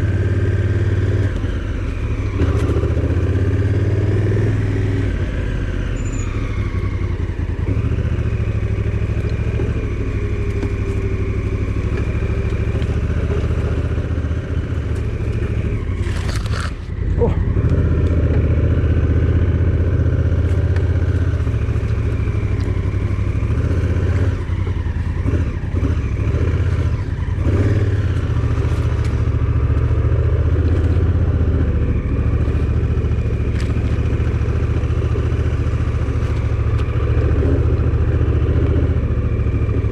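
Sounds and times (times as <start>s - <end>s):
vehicle engine droning: 0.0s - 39.9s
clattering and scraping: 16.0s - 17.0s
rushing scrape: 16.0s - 17.3s.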